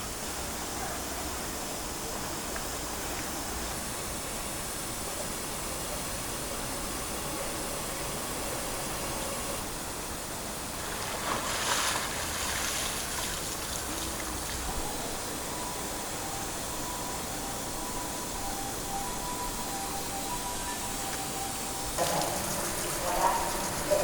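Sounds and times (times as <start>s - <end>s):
running water rushing: 9.0s - 15.6s, 22.0s - 24.0s.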